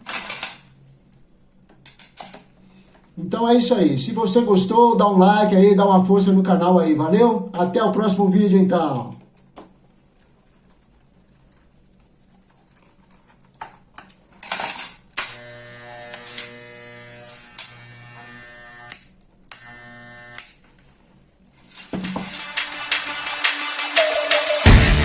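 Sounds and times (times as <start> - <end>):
electric hair clipper buzzing: 15.2 - 20.6.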